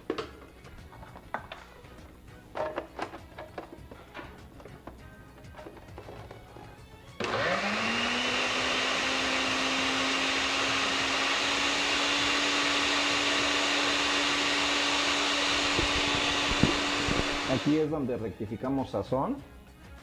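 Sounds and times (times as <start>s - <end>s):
electric blender running: 7.2s - 17.8s.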